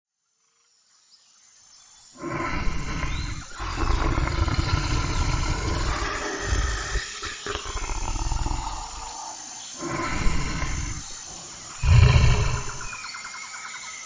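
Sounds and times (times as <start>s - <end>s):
bear low calls: 2.2s - 13.0s.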